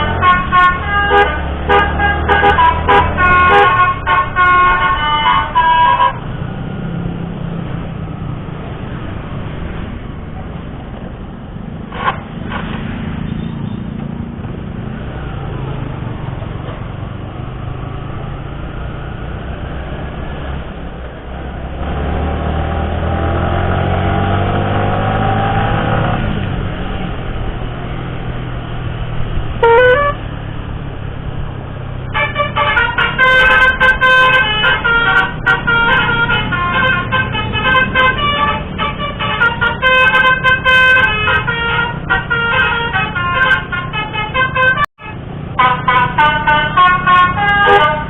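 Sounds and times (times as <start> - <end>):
multi-tone musical horn: 0.0 - 6.2, 29.6 - 30.2, 32.1 - 48.0
short horn toot: 29.6 - 30.2, 32.3 - 48.0.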